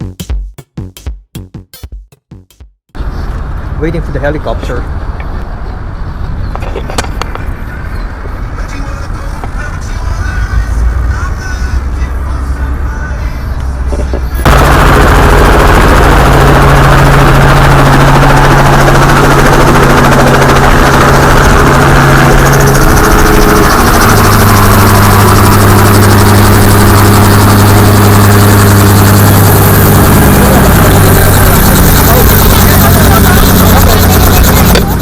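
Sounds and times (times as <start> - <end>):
helicopter engine and rotor: 14.4 - 35.0.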